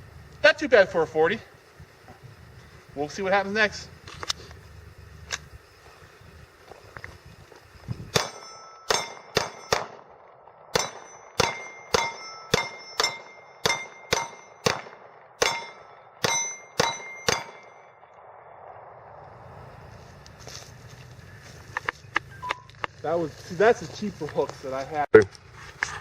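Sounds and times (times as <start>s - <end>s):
pistol shots: 8.1s - 17.8s
metallic ring from steel target: 8.2s - 10.0s, 10.8s - 14.8s, 15.4s - 17.9s.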